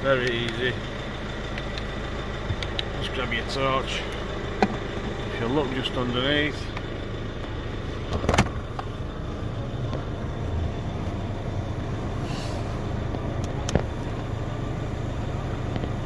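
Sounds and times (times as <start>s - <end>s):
low vehicle rumble: 0.0s - 16.0s
sharp clicks: 1.5s - 1.9s, 2.6s - 3.0s.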